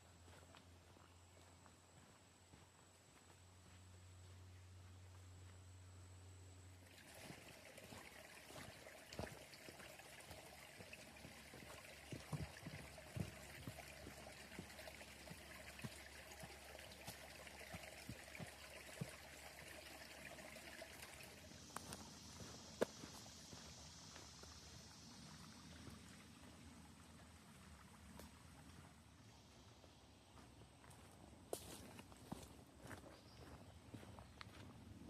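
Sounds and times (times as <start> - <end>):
water trickling off rocks: 6.8 - 29.3.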